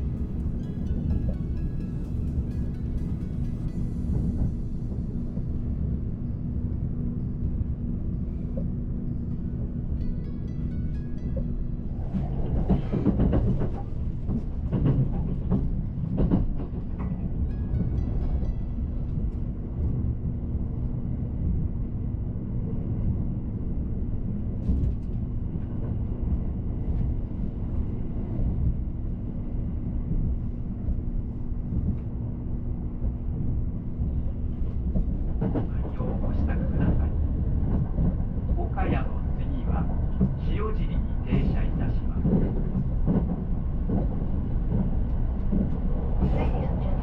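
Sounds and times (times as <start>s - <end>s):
train rumbling from inside car: 0.0s - 47.0s.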